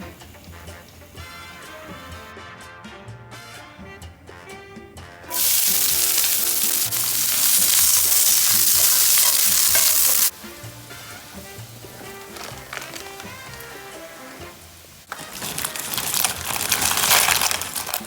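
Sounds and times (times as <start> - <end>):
quiet background music: 0.0 - 18.0
chicken sizzling in hot oil: 5.3 - 18.0.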